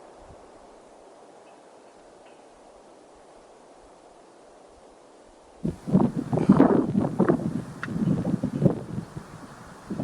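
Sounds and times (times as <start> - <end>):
strong wind on microphone: 5.6 - 10.0.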